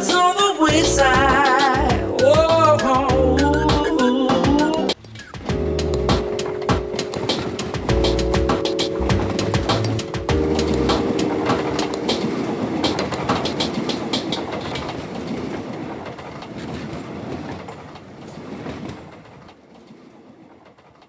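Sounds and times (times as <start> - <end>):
train rumble and wheel clicks: 5.3 - 21.0.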